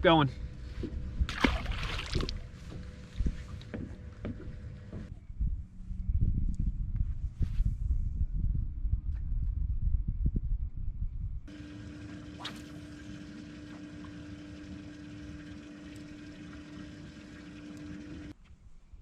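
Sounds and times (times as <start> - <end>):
boat motor humming: 0.0 - 5.1, 11.5 - 18.4
wind rumbling on microphone: 0.4 - 11.5.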